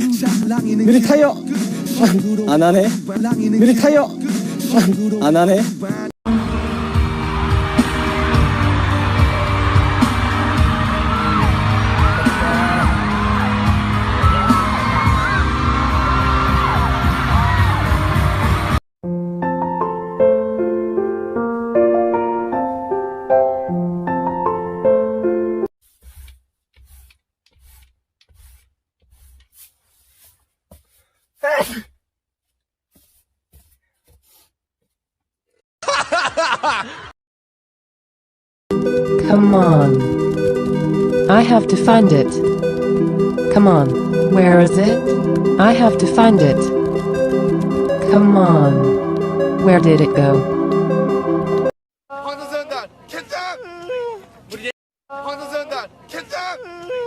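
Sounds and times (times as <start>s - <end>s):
pop music with heavy beat: 0.0s - 18.8s
people whooping and yelling: 6.7s - 18.2s
person sneezing: 31.4s - 32.0s.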